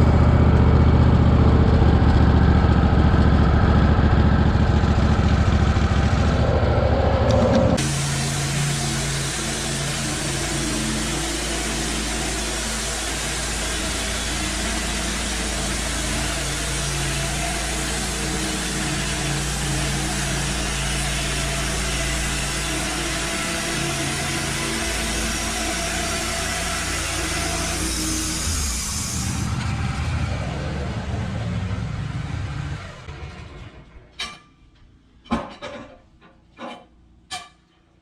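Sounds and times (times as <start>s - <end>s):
band sawmill engine hum: 0.0s - 34.2s
broad hiss: 7.8s - 29.4s.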